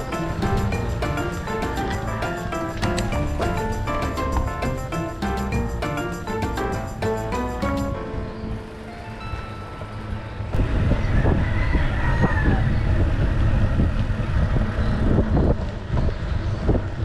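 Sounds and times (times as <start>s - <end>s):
wind buffeting microphone: 0.0s - 6.1s, 10.4s - 17.0s.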